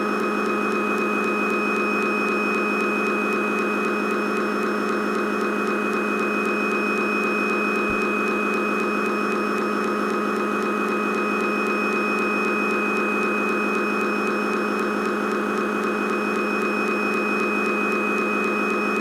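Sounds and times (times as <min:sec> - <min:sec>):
steady machine hum: 0:07.7 - 0:08.3.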